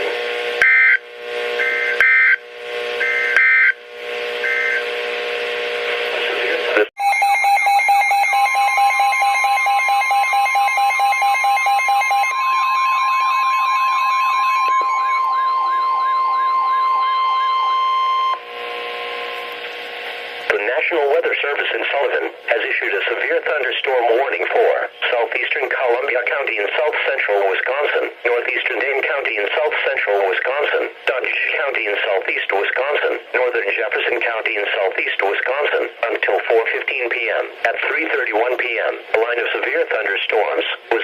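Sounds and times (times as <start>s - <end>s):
steady hum: 0.0s - 6.9s, 8.4s - 41.0s
digital data chirps: 7.0s - 18.4s
electronic alert warbling tones: 7.0s - 18.4s.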